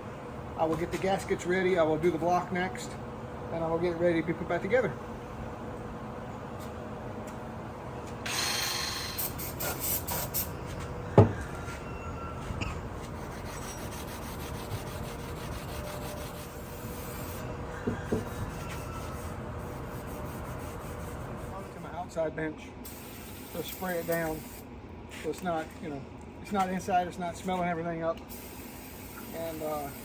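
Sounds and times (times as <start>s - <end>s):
short hiss: 8.2s - 10.5s
scrubbing and rasping on metal: 13.0s - 21.7s.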